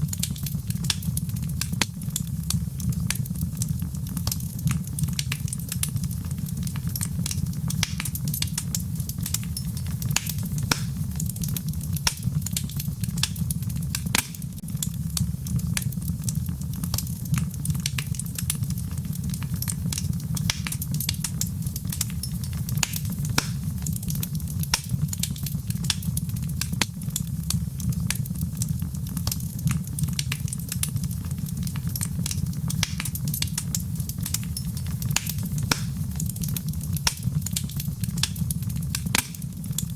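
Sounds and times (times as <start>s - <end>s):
low rumble of fire: 0.0s - 39.9s
wood fire crackling: 0.0s - 39.9s.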